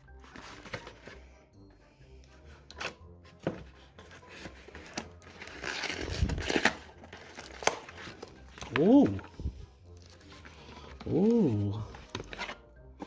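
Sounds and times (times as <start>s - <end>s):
faint background music: 0.0s - 13.0s
packaging crinkling and rustling: 4.0s - 9.4s.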